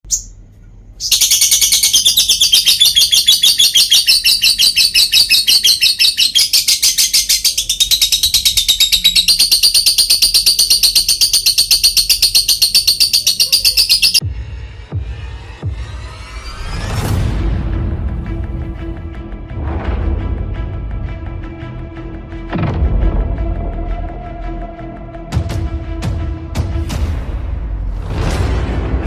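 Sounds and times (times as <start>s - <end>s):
lovebird chattering trill: 1.0s - 14.2s.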